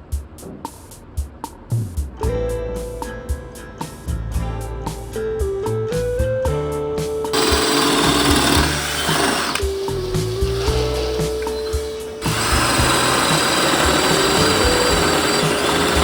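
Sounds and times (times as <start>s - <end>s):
background music: 1.7s - 16.0s
power tool running: 7.3s - 16.0s.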